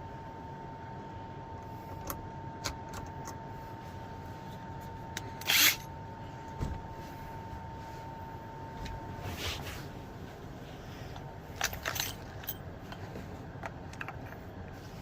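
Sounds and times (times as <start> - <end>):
faint steady hum: 0.0 - 15.0
dull thump: 6.6 - 6.9.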